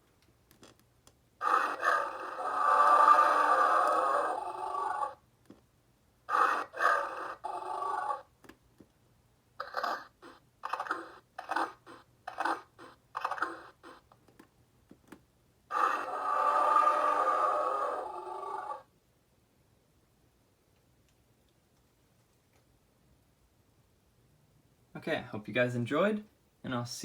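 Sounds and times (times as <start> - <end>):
electronic dinosaur roars: 1.4 - 5.2, 6.3 - 8.3, 15.7 - 18.9.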